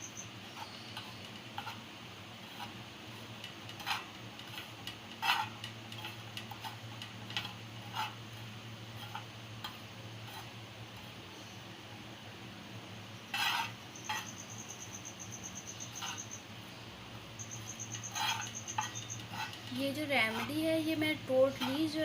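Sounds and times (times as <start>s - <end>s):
steady low hum: 0.0s - 22.0s
spoon scraping a frying pan: 0.4s - 10.5s, 13.3s - 14.5s, 15.8s - 16.4s, 17.4s - 22.0s.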